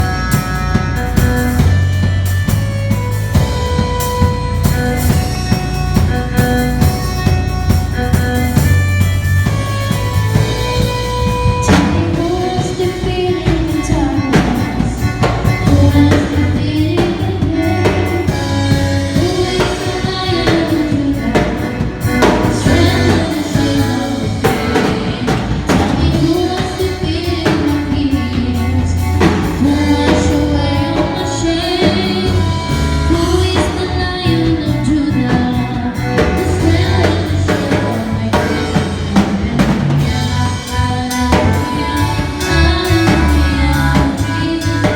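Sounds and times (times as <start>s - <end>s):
live band playing: 0.0s - 44.9s
person singing: 10.4s - 44.9s.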